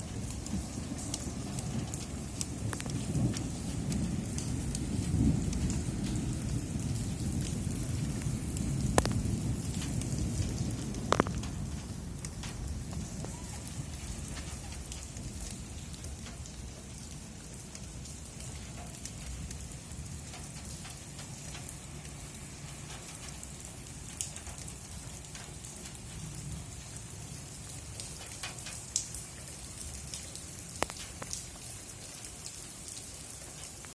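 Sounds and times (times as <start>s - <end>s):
steady rain falling: 0.0s - 33.9s
drops ticking on a surface: 1.9s - 4.5s, 8.2s - 13.4s, 30.8s - 31.4s.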